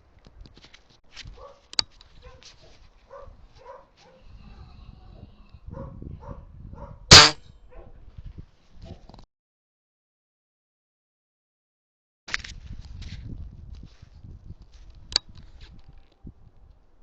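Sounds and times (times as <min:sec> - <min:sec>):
loud sharp crack: 0:07.1 - 0:07.4.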